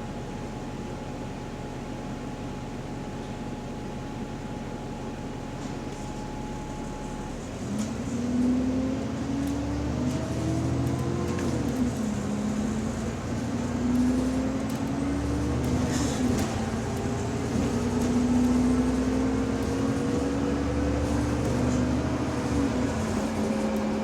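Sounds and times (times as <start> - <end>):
bus engine running: 5.6 - 24.0.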